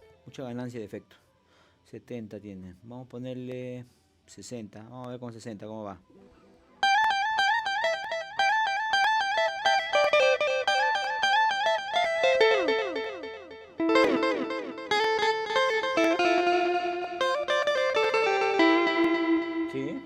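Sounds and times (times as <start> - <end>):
electric guitar melody with delay: 6.8 - 20.0.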